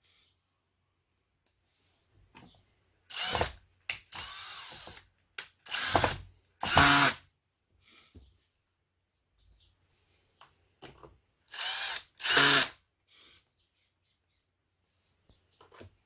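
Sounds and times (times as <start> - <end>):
electric screwdriver whirring: 3.1 - 5.0, 5.7 - 7.2, 11.5 - 12.8.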